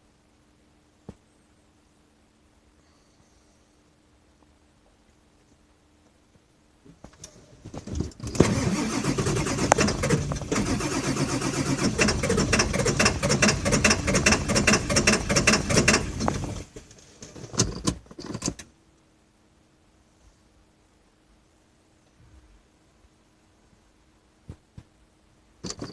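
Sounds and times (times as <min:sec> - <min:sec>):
diesel engine cranking on starter: 0:07.3 - 0:18.6.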